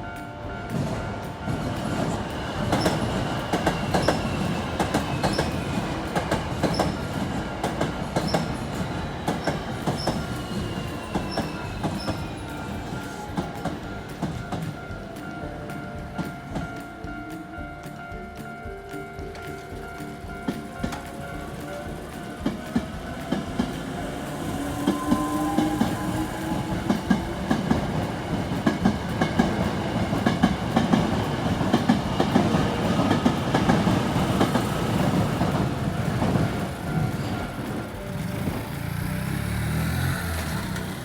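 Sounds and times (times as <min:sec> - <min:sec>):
electric train wheels clattering: 0:00.0 - 0:41.0.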